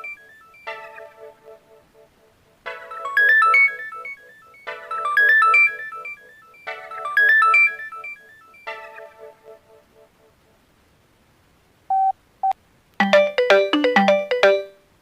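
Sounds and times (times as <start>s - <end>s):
synthesized phone ringtone: 2.7s - 9.0s, 13.0s - 14.8s.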